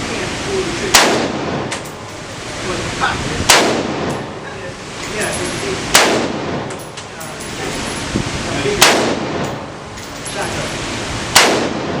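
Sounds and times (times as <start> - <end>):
echoing gunshots: 0.9 - 1.7, 3.5 - 4.2, 5.9 - 6.7, 8.8 - 9.7, 11.3 - 12.0.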